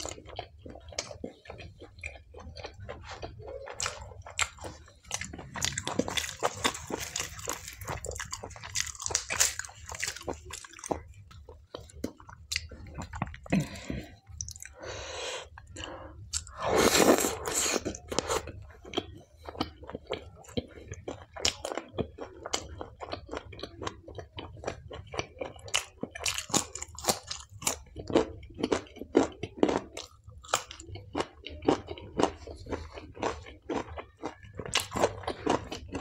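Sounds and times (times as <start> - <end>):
wet chewing clicks and smacks: 0.0 - 13.6, 14.3 - 14.8
crunchy bite of food: 2.1 - 11.0.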